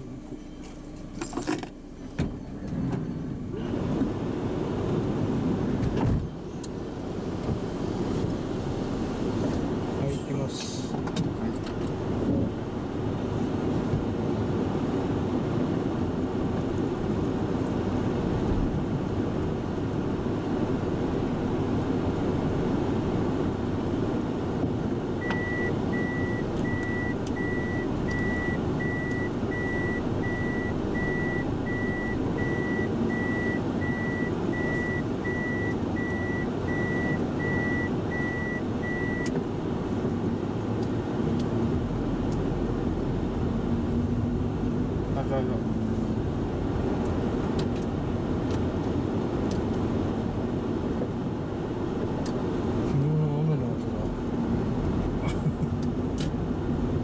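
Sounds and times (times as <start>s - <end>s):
minivan engine and road rumble: 0.0s - 57.0s
reverse warning beeps: 25.2s - 39.3s.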